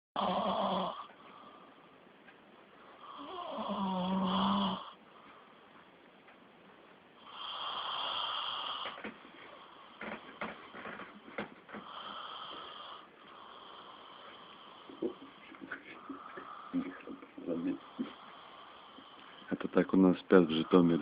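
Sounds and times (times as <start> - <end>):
person snoring heavily: 0.2 - 1.1, 3.1 - 5.0.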